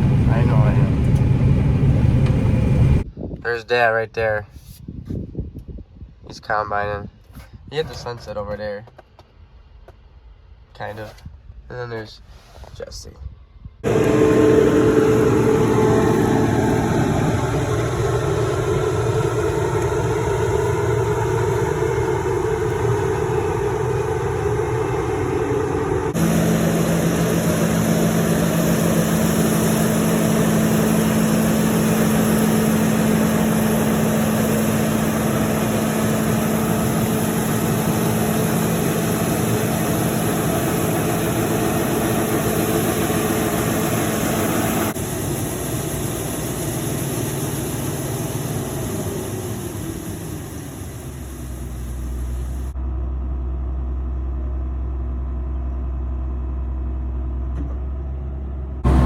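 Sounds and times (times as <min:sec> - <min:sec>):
combine harvester engine drone: 0:00.0 - 0:03.0, 0:13.8 - 0:59.0
low pitched hum: 0:00.0 - 0:03.1, 0:13.3 - 0:45.0, 0:45.9 - 0:54.5, 0:58.8 - 0:59.0.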